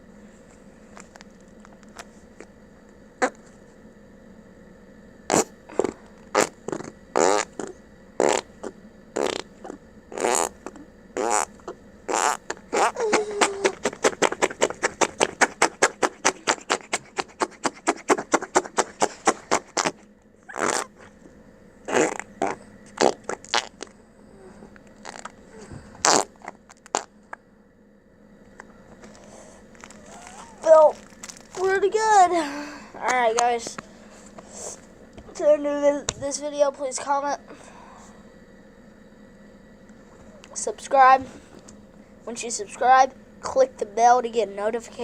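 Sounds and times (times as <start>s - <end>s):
putty wet fart noises: 5.3s - 21.2s, 21.9s - 23.9s, 25.0s - 25.4s, 26.0s - 27.1s, 29.0s - 31.7s.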